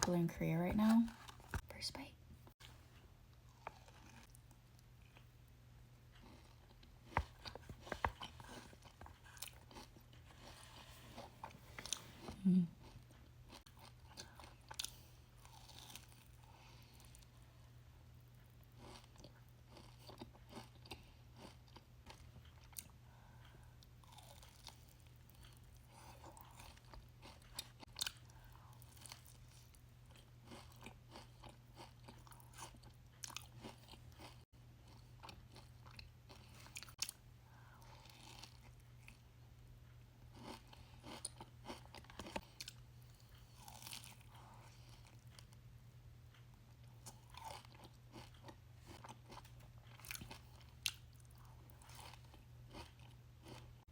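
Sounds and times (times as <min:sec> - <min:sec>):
faint low hum: 0:00.0 - 0:53.8
cookie chewing crunches: 0:02.6 - 0:17.4, 0:18.3 - 0:45.7, 0:46.3 - 0:53.8.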